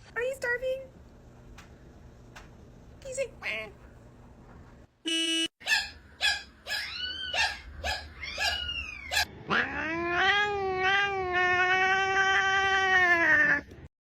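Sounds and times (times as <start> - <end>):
cat yowling: 5.6 - 13.7
cat meowing: 6.8 - 13.7.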